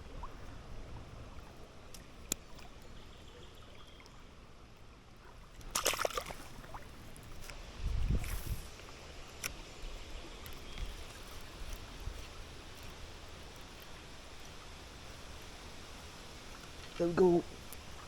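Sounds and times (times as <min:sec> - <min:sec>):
river water running and trickling: 0:00.0 - 0:18.0
water splash: 0:05.6 - 0:07.1.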